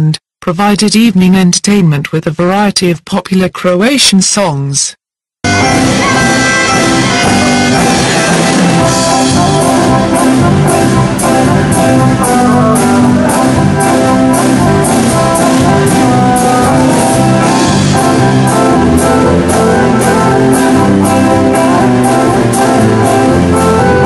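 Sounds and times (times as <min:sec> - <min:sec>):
drum kit: 0:05.4 - 0:24.0
plucked guitar: 0:05.5 - 0:24.0.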